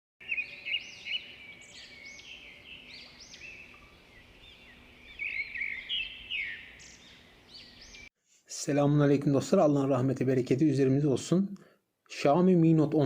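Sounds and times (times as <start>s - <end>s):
small birds chirping: 0.2s - 8.1s.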